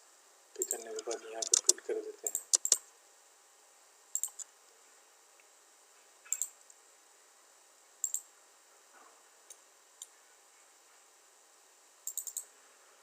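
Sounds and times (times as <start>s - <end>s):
faint steady hiss: 0.0s - 13.0s
computer mouse clicking: 0.6s - 2.8s, 4.2s - 4.5s, 6.3s - 6.6s, 8.0s - 8.2s, 12.1s - 12.5s.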